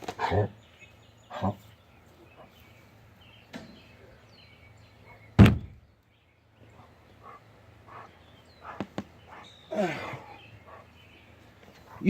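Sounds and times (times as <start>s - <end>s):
loud thump: 5.4s - 5.8s.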